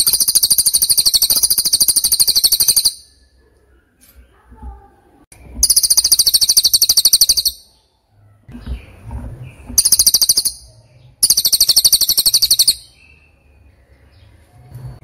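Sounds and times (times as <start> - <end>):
bird high-pitched trill: 0.0 - 3.3, 5.6 - 7.8, 9.8 - 13.4.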